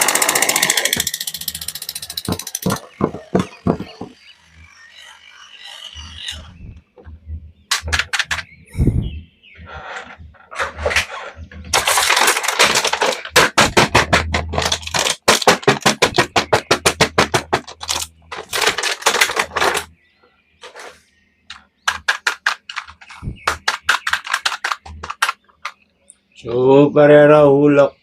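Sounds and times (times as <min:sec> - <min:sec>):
plastic packaging crackling: 0:11.7 - 0:16.5, 0:17.6 - 0:19.9, 0:21.9 - 0:25.7.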